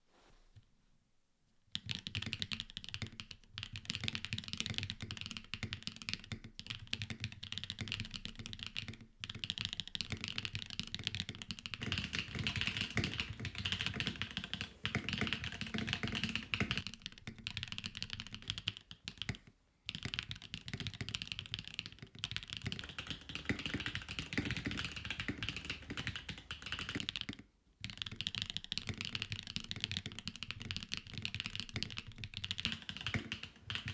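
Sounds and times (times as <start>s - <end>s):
mechanical keyboard typing: 1.8s - 33.9s.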